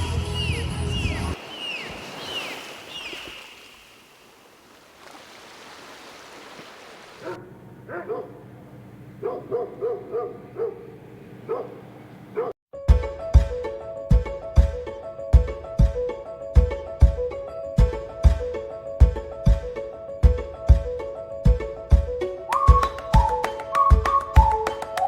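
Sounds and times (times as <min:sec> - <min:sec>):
dog barking: 0:07.2 - 0:08.5, 0:09.2 - 0:12.6.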